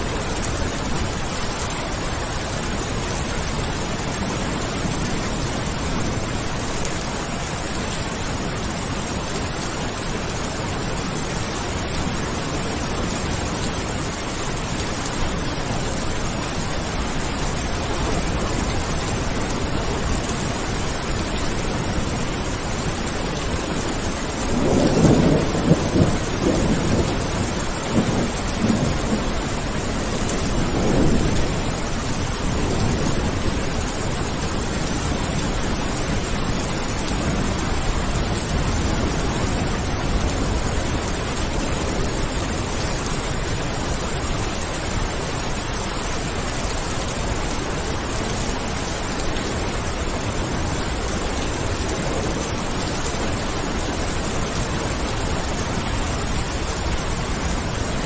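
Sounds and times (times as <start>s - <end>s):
steady rain: 0.0s - 58.0s
rolling thunder: 23.4s - 42.8s.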